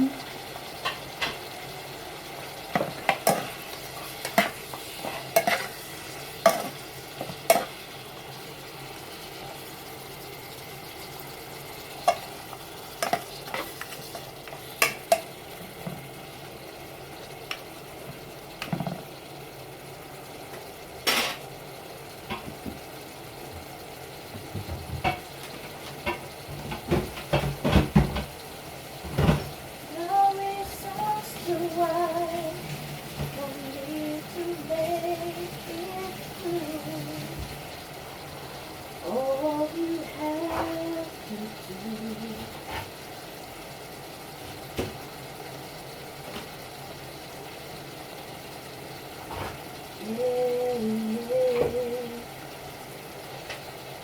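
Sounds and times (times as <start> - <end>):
food sizzling in oil: 0.0 - 54.0
spatula scraping pan: 2.8 - 7.7, 13.0 - 15.2.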